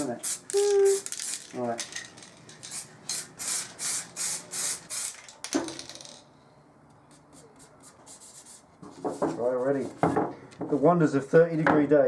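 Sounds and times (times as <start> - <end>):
spray can hissing bursts: 0.0 - 1.6, 2.6 - 5.4
knock: 10.0 - 10.4.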